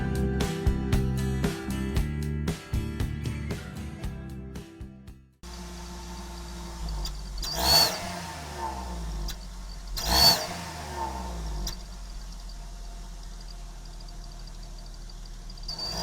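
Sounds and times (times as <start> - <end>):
car engine idling and revving: 5.4 - 16.0.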